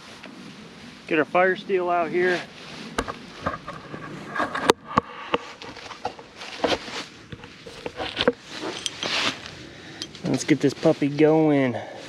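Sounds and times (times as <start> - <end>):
camping gear rustling and clicking: 2.7 - 11.3.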